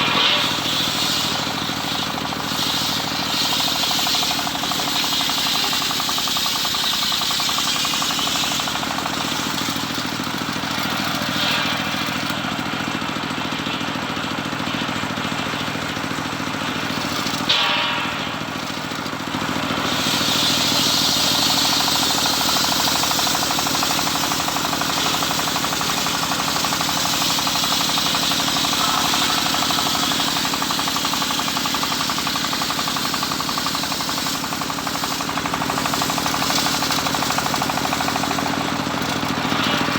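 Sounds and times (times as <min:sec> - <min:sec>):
circular saw cutting wood: 0:00.0 - 0:39.9
sharp crack: 0:16.8 - 0:31.3.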